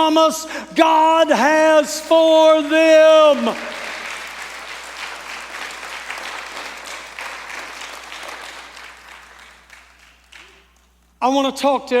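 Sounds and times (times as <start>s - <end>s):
crowd applauding: 3.1s - 11.0s.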